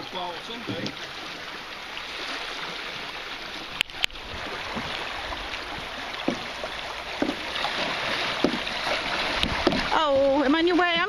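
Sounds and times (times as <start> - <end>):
paddle splashes: 0.0 - 11.0
water rushing in a creek: 0.0 - 11.0
sharp knocks: 6.2 - 6.5, 7.2 - 7.4, 8.4 - 8.7, 9.4 - 10.0.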